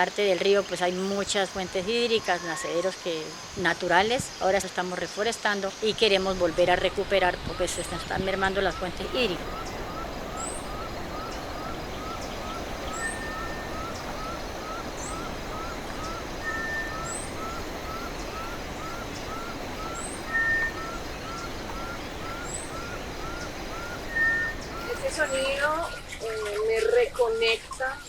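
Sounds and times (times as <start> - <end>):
steady background hiss: 0.0 - 28.0
high chirp: 6.0 - 26.7
brief level whistle: 8.7 - 25.6.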